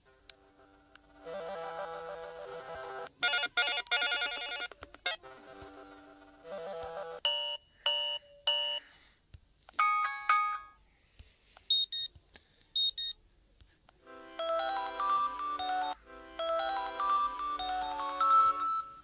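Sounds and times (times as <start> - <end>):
ringtone melody: 1.1 - 5.3, 9.8 - 10.8, 14.1 - 19.0
melodic phone jingle: 9.8 - 10.8, 14.4 - 19.0
phone alert chimes: 9.8 - 10.8
high beeps: 12.8 - 13.2.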